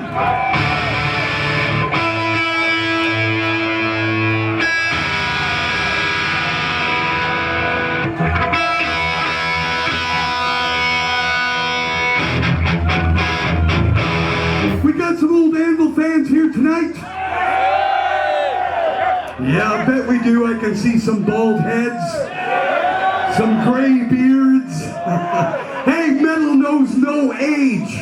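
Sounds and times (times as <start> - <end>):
distorted electric guitar chords: 0.2 - 14.8.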